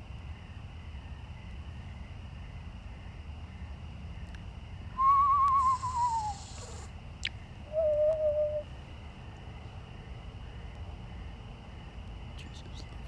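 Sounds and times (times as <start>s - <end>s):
owl quavering trill: 5.0s - 6.9s, 7.7s - 8.7s
owl quavering whistle: 5.0s - 6.9s, 7.7s - 8.7s
hissing rasp: 5.6s - 6.9s.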